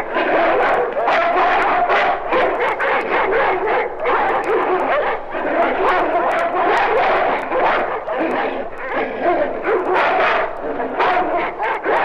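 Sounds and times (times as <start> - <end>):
dogs barking and yelping: 0.0 - 12.0.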